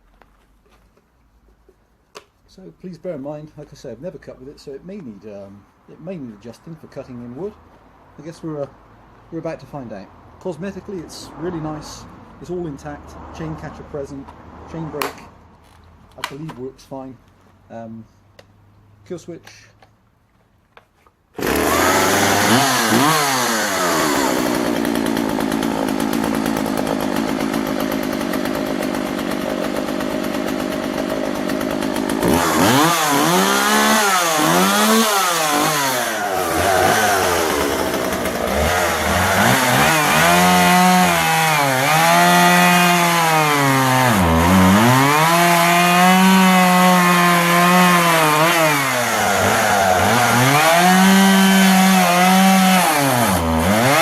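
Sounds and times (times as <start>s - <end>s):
chainsaw revving and idling: 21.4s - 54.0s.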